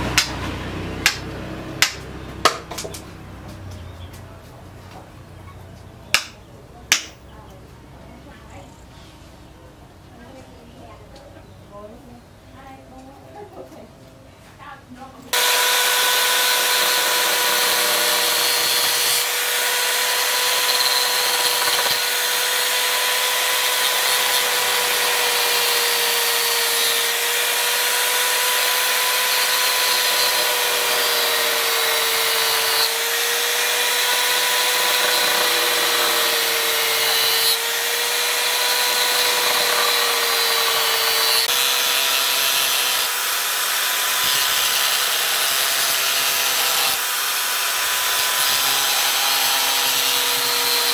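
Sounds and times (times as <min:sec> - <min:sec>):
electric power tool motor hum: 0:15.3 - 0:50.9.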